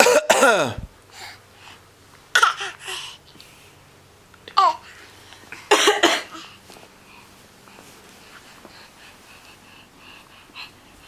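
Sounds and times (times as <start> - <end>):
person coughing: 0.0 - 0.9, 5.7 - 6.4.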